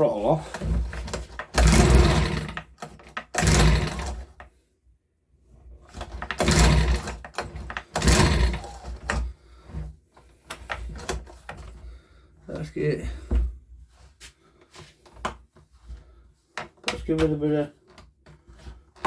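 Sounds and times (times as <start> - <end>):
recoil starter cord whirring: 0.4 - 4.4, 5.9 - 9.8
small engine turning over: 1.5 - 4.3, 6.3 - 9.2.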